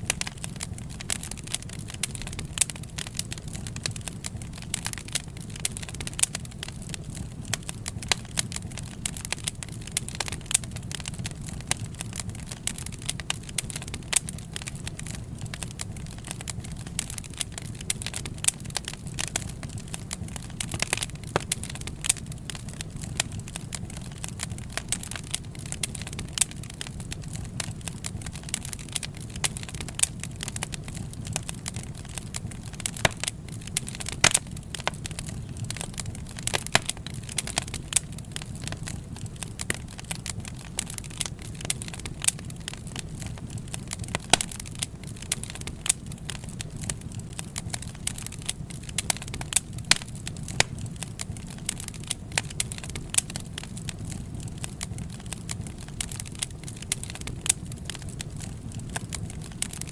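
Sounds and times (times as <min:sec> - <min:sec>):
low rumble of burning: 0:00.0 - 0:59.9
wood fire crackling and popping: 0:00.0 - 0:59.9.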